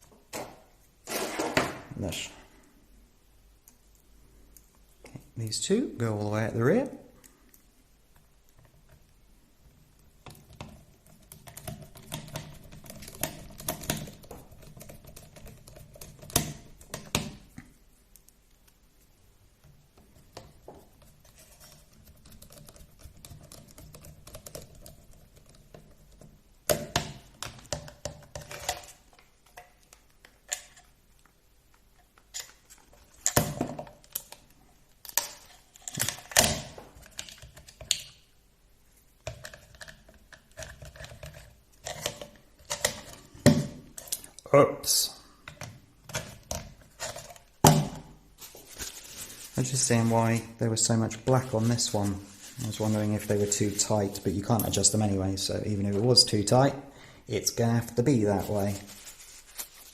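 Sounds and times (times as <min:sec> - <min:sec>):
quiet handling and rustling: 0:48.3 - 0:59.9.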